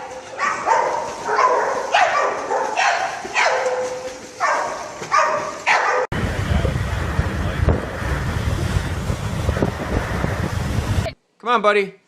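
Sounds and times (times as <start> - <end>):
dog barking: 0.4 - 6.1.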